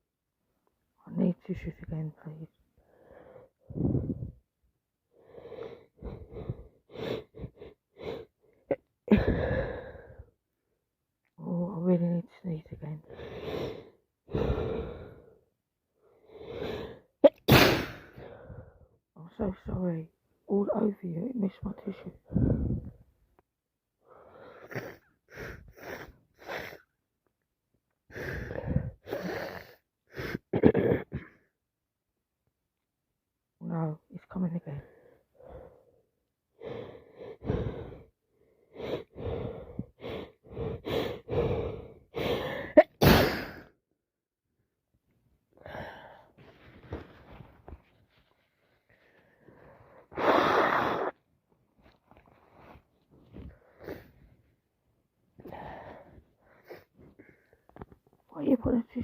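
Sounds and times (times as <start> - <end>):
woman breathing noisily: 2.8 - 4.4, 5.1 - 10.4, 13.1 - 15.4, 18.0 - 18.9, 22.2 - 23.0, 28.1 - 30.5, 34.9 - 42.8, 45.6 - 47.4, 48.8 - 50.4, 55.4 - 57.8
woman wheezy breaths: 5.2 - 10.4, 36.6 - 43.0
woman gasping: 9.1 - 10.3, 28.1 - 30.5
woman sneezing: 17.3 - 18.1, 42.8 - 43.7, 50.2 - 51.2.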